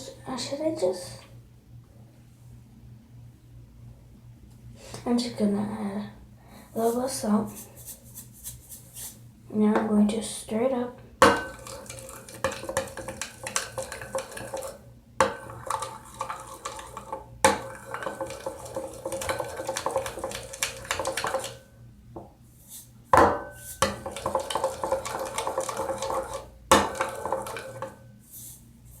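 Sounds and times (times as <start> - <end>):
utensil scraping and clinking in bowl: 11.2 - 21.6, 22.7 - 28.6.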